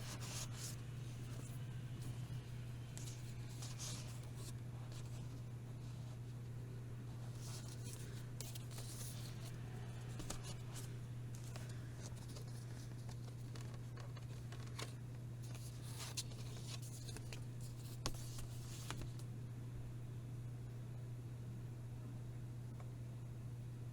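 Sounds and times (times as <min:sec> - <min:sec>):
steady low hum: 0:00.0 - 0:23.9
packaging rustling and scraping: 0:07.3 - 0:19.2.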